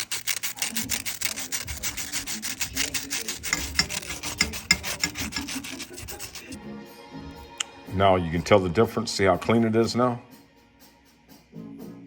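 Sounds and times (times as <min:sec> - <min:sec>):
sandpaper rubbing on metal rod: 0:00.0 - 0:06.6.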